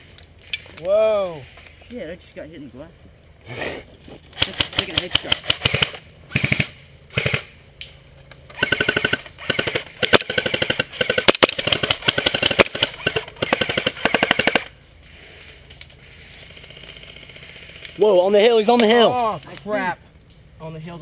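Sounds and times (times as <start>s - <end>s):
airsoft rifles firing bursts: 4.4s - 7.6s, 8.5s - 14.7s.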